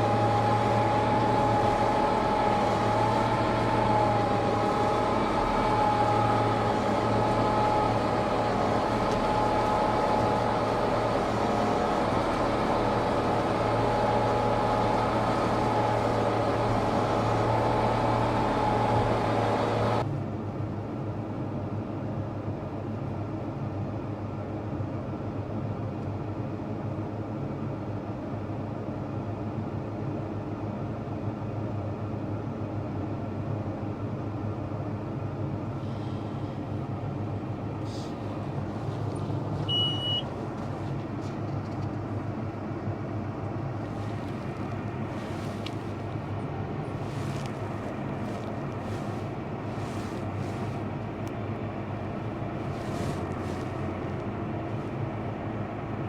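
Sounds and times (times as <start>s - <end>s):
tractor engine droning: 0.0s - 20.1s, 35.6s - 56.0s
short high electronic beep: 39.7s - 40.3s.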